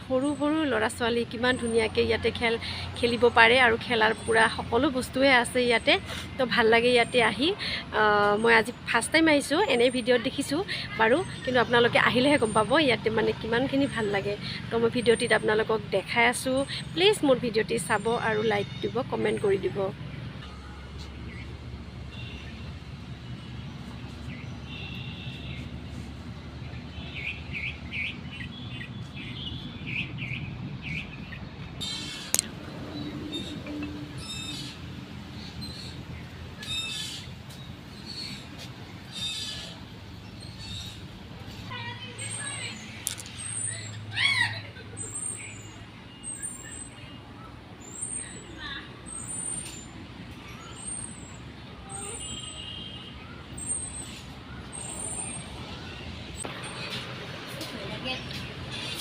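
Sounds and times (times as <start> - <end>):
traffic rumble: 0.0 - 59.0
small birds chirping: 21.0 - 59.0
distant voices: 31.8 - 59.0.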